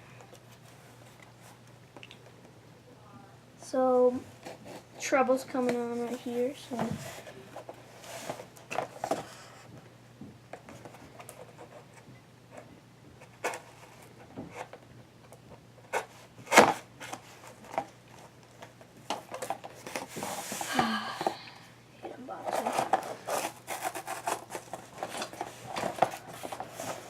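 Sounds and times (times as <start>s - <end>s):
packaging rustling and scraping: 5.8s - 9.7s, 15.8s - 20.7s, 22.4s - 27.0s.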